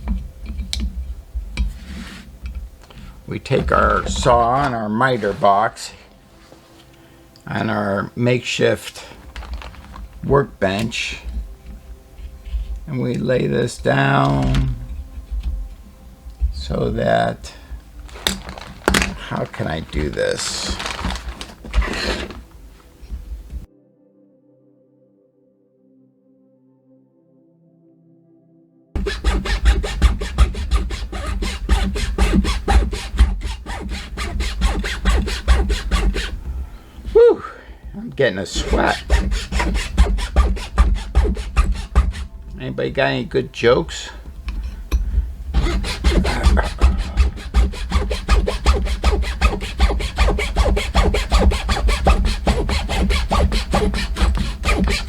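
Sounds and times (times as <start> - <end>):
hand saw cutting plastic rod: 2.8 - 5.6, 9.4 - 15.7, 16.5 - 22.6, 29.0 - 37.2, 38.5 - 42.4, 45.5 - 55.0.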